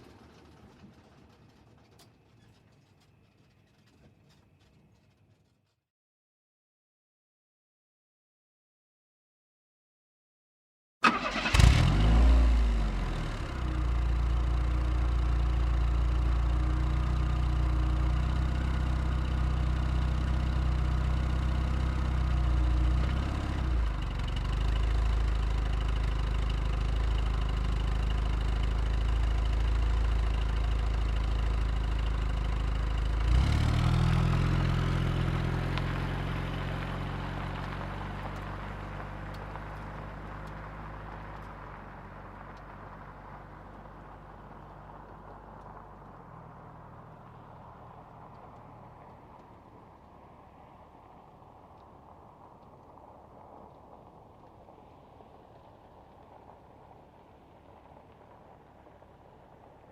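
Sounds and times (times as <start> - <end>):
car engine starting and idling: 0.0 - 5.8, 11.0 - 59.9
car engine revving: 33.1 - 38.6.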